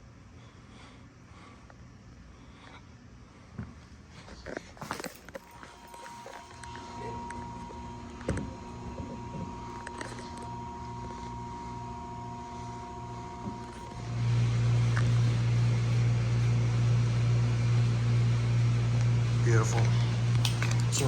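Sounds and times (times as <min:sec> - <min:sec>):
pulsing low buzzing hum: 0:04.8 - 0:21.0.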